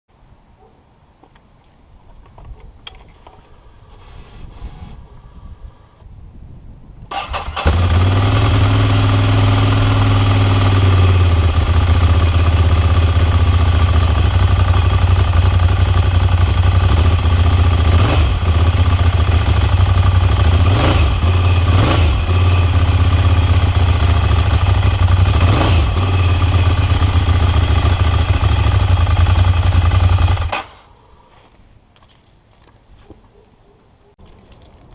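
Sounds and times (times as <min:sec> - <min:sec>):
motorcycle engine idling: 0:07.4 - 0:30.8.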